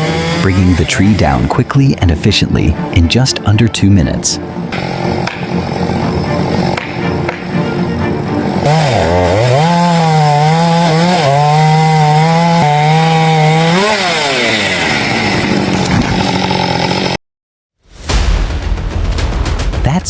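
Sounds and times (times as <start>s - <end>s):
chainsaw cutting tree trunk: 0.0s - 1.7s, 4.7s - 17.2s.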